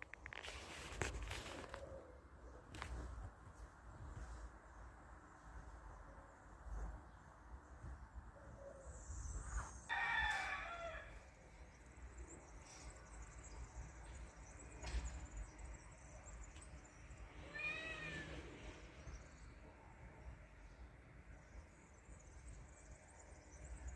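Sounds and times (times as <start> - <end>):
cat meowing: 17.5 - 18.5.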